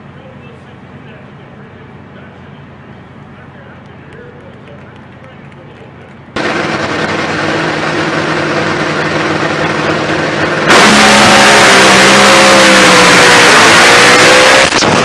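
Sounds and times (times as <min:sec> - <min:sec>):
drag racer engine at full throttle: 0:00.0 - 0:15.0.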